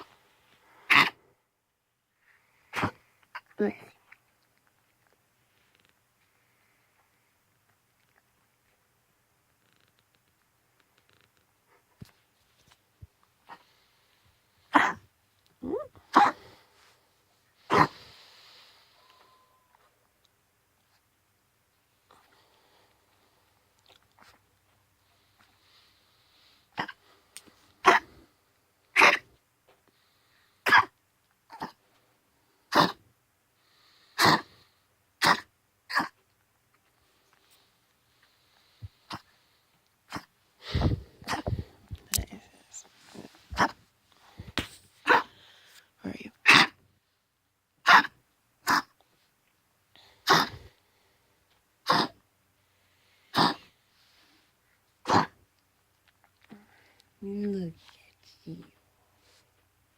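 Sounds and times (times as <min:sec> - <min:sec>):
dog coughing: 0:00.9 - 0:01.2, 0:14.7 - 0:15.0, 0:16.1 - 0:16.4, 0:17.7 - 0:17.9, 0:27.8 - 0:28.1, 0:29.0 - 0:29.3, 0:30.6 - 0:30.9, 0:34.2 - 0:34.5, 0:35.2 - 0:36.1, 0:46.4 - 0:46.8, 0:50.2 - 0:50.6, 0:51.8 - 0:52.2, 0:53.4 - 0:53.6, 0:55.1 - 0:55.4.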